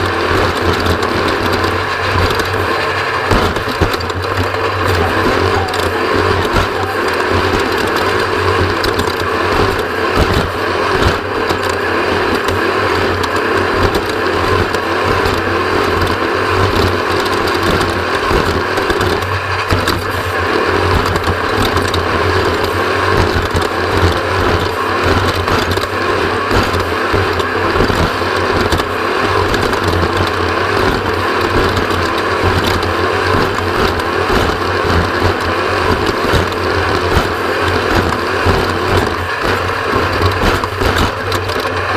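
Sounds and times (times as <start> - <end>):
chassis rattling and knocking: 0.0 - 41.9
vehicle engine drone: 0.0 - 41.9.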